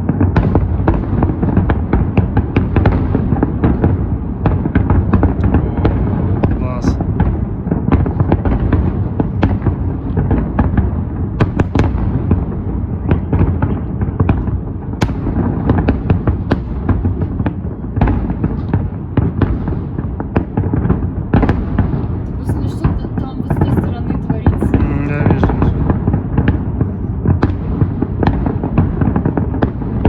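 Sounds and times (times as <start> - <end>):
fireworks cracks and bangs: 0.0 - 30.0
low rumble of explosions: 0.0 - 30.0.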